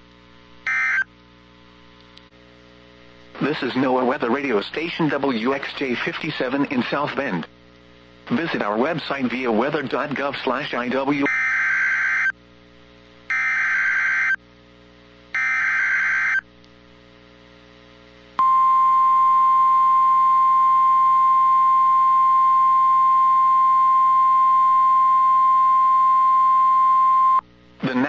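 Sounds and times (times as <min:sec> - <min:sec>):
screechy warbling data bursts: 0:00.7 - 0:01.0, 0:11.3 - 0:12.3, 0:13.3 - 0:14.4
steady warning alarm tone: 0:00.7 - 0:01.0, 0:11.3 - 0:12.3, 0:13.3 - 0:14.4, 0:15.4 - 0:16.4.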